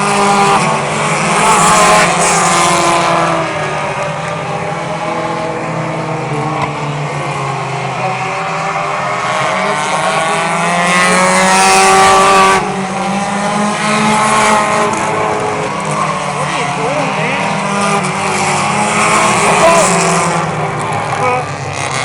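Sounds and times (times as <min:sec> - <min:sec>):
race cars passing: 0:00.0 - 0:22.0.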